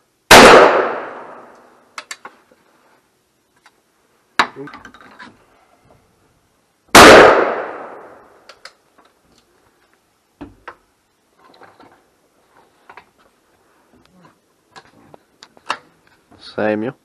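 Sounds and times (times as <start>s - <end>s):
shotgun blast: 0.3s - 1.5s, 6.9s - 8.2s.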